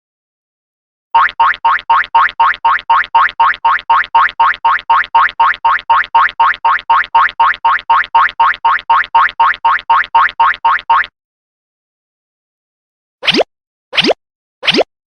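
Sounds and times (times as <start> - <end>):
cartoon running footsteps blips: 1.2 - 11.1.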